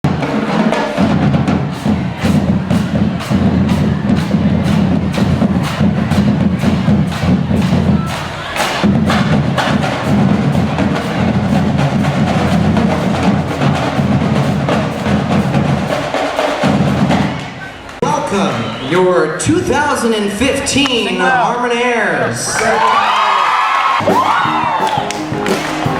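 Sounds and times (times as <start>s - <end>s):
music with fast percussive beat: 0.0s - 17.6s, 24.0s - 25.9s.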